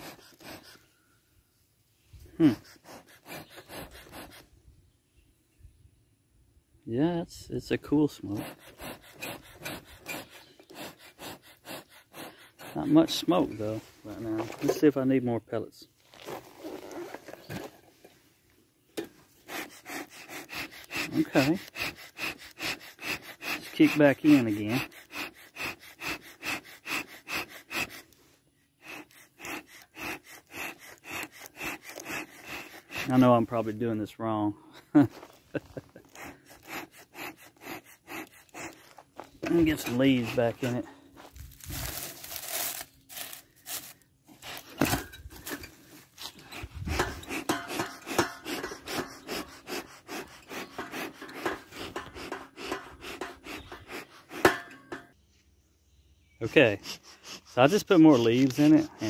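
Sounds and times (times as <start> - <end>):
bee smoker bellows puffing: 7.8 - 15.1, 28.8 - 33.7, 35.8 - 55.1
leaves rustling and crunching: 41.2 - 44.8.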